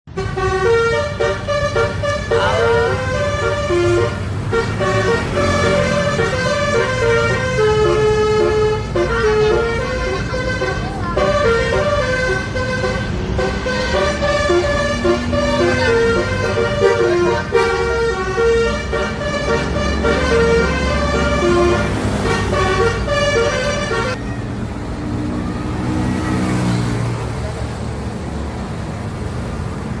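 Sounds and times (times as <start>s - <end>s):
bus engine and road noise: 0.0s - 30.0s
multi-tone musical bus horn: 0.1s - 24.6s.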